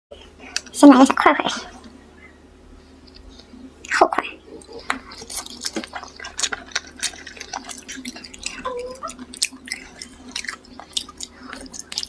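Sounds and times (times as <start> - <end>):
wet chewing and mouth sounds: 3.0 - 12.0.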